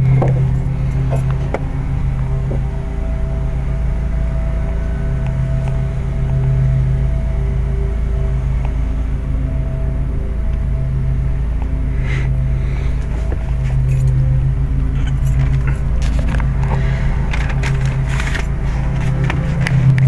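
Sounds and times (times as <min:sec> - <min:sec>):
metallic clinks and rattles: 0:00.0 - 0:02.7, 0:12.9 - 0:20.0
low mechanical hum: 0:00.0 - 0:20.0
low rumble: 0:00.0 - 0:20.0.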